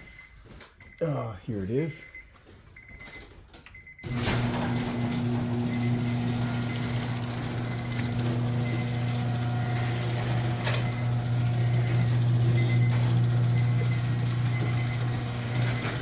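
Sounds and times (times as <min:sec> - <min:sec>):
garage door opener motor humming: 0:04.0 - 0:16.0.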